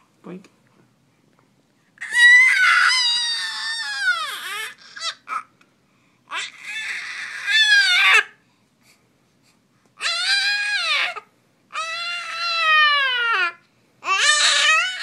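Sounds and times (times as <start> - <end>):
baby screeching: 2.0 - 5.5, 6.3 - 8.4, 10.0 - 15.0.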